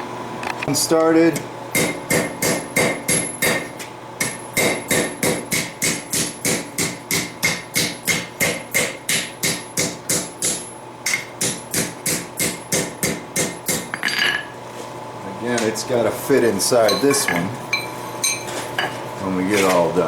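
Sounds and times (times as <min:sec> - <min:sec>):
hammer striking steel on anvil: 0:01.8 - 0:14.6.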